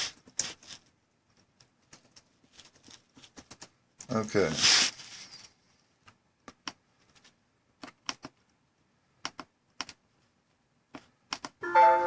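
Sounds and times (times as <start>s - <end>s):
computer keyboard key clicks: 7.8s - 8.4s, 9.2s - 10.0s, 10.9s - 11.6s.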